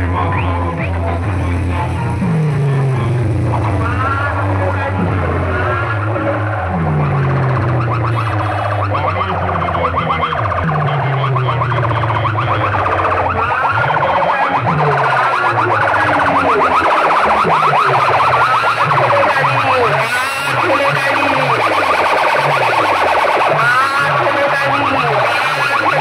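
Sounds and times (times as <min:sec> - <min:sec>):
electronic siren warbling tones: 0:00.0 - 0:26.0
sliding low bass pulses: 0:00.0 - 0:26.0.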